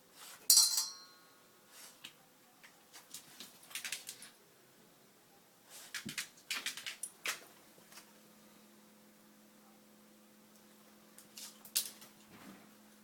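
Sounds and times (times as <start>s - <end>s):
steady low hum: 4.4s - 13.0s.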